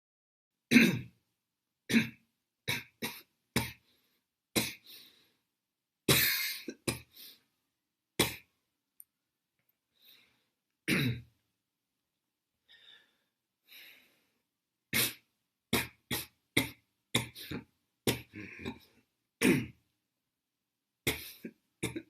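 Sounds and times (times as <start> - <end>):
person coughing: 0.7 - 1.1, 1.9 - 3.8, 4.6 - 4.8, 6.1 - 7.1, 8.2 - 8.5, 10.9 - 11.3, 15.8 - 19.8, 21.1 - 22.0.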